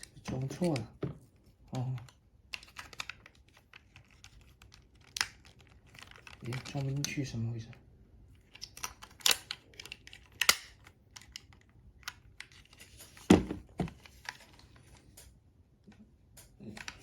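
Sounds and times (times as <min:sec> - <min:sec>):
plastic toy clicks and knocks: 0:08.5 - 0:12.2.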